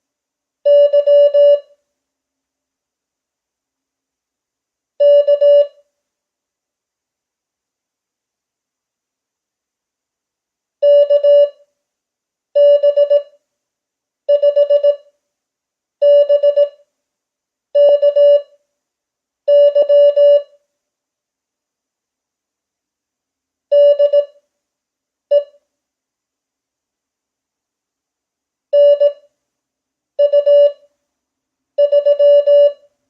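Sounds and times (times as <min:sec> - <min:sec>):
morse code beeps: 0:12.6 - 0:13.2, 0:19.5 - 0:20.5, 0:23.8 - 0:24.3, 0:28.8 - 0:29.2, 0:30.2 - 0:30.8, 0:31.8 - 0:32.8.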